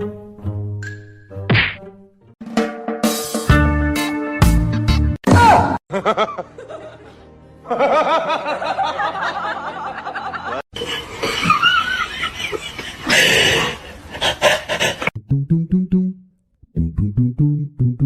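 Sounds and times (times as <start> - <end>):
background music: 0.0 - 10.6
people laughing and snickering: 5.9 - 15.2.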